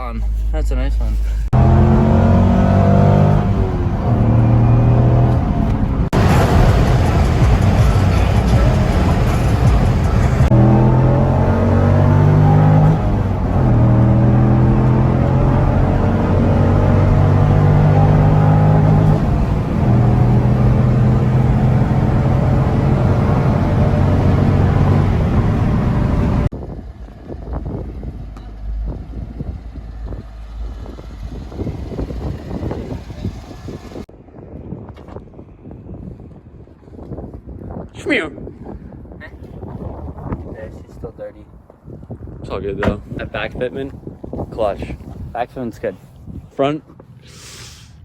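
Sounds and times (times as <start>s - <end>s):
rough rumbling noise: 0.0s - 12.2s, 13.0s - 34.4s
car engine droning: 0.0s - 34.1s.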